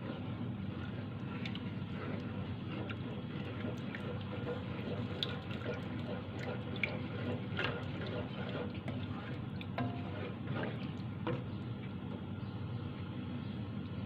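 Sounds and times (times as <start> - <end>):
running kitchen water: 1.2 - 11.1.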